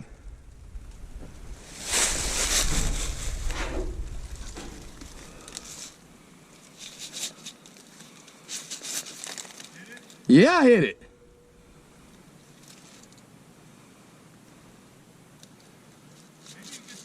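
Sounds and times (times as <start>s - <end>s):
wind buffeting microphone: 0.0s - 5.2s.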